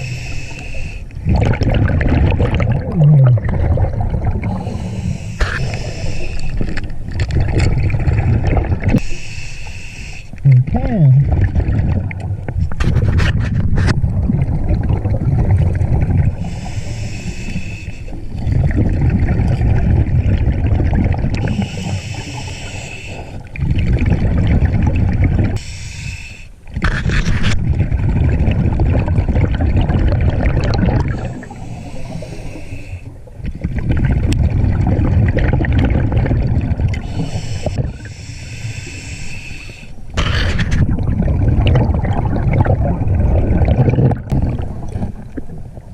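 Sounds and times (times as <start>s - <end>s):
regulator inhale hiss: 0.0s - 1.2s, 4.5s - 6.7s, 9.0s - 10.4s, 16.4s - 18.2s, 21.4s - 23.5s, 25.6s - 26.6s, 31.2s - 33.1s, 37.0s - 40.1s
exhaled air bubbling: 0.0s - 9.2s, 10.0s - 45.9s.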